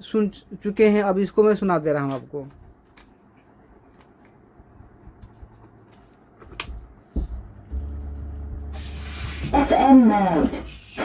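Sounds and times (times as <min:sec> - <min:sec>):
amplifier power-on thump: 0:06.6 - 0:09.6
speaker low hum: 0:06.6 - 0:10.6.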